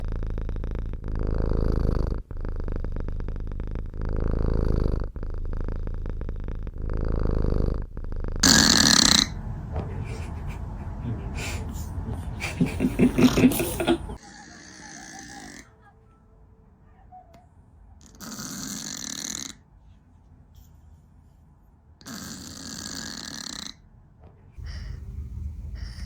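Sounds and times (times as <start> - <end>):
cat snoring: 0.0 - 15.7, 18.0 - 19.6, 22.0 - 23.8, 24.6 - 26.0.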